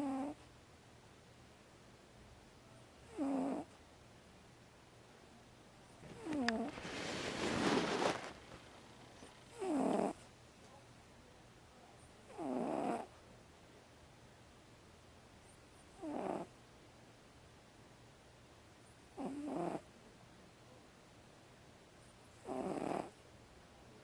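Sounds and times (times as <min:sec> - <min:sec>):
cat snoring squeaks: 0:00.0 - 0:00.4, 0:03.1 - 0:03.7, 0:06.2 - 0:06.7, 0:09.4 - 0:10.2, 0:12.3 - 0:13.1, 0:16.0 - 0:16.5, 0:19.2 - 0:19.8, 0:22.4 - 0:23.1.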